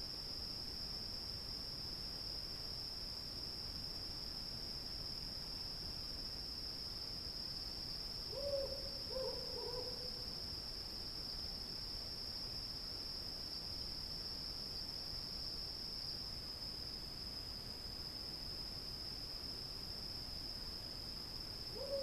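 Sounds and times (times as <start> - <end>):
cicadas droning: 0.0 - 22.0
owl hooting: 8.3 - 10.0, 21.8 - 22.0.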